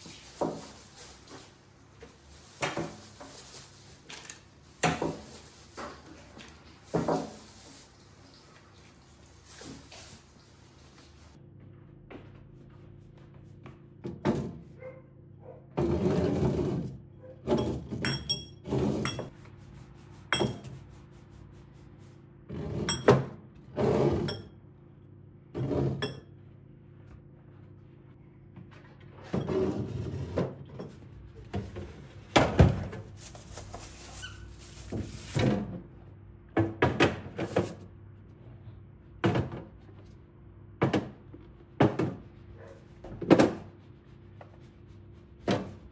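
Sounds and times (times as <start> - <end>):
kitchen items thunking and knocking: 0.0 - 11.2, 29.2 - 35.9, 36.5 - 37.8, 39.2 - 40.0, 40.8 - 42.2, 43.0 - 43.7
glassy clink: 18.1 - 19.2.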